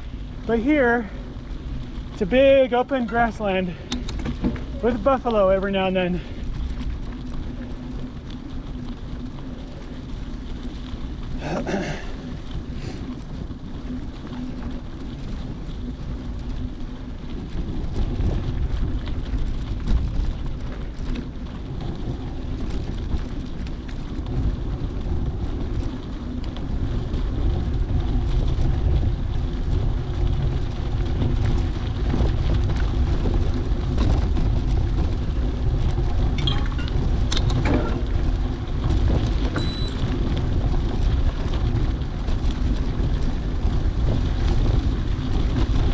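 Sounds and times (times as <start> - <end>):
wind buffeting the microphone: 0.0 - 45.9
short high electronic beep: 39.6 - 40.0.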